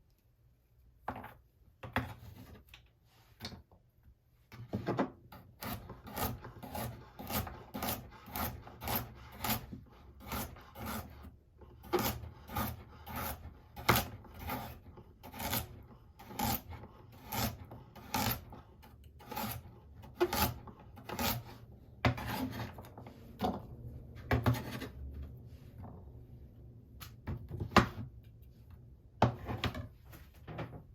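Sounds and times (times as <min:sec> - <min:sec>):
blade cutting carrot on board: 0:04.7 - 0:25.0.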